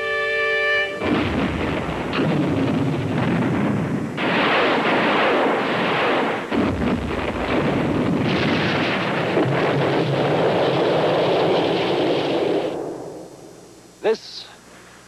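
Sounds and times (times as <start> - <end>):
explosions: 1.0 - 13.2
gunfire: 1.0 - 13.2.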